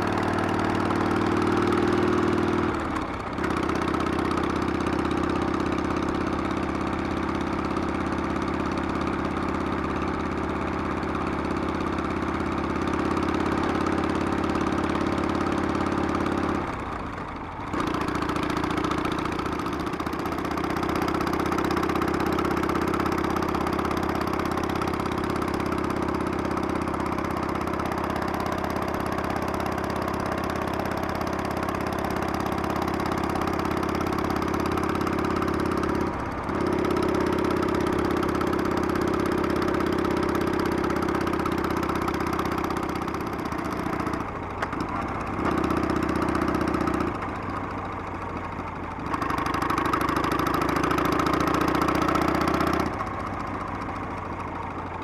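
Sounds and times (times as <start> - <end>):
motorcycle engine running: 0.0 - 55.0.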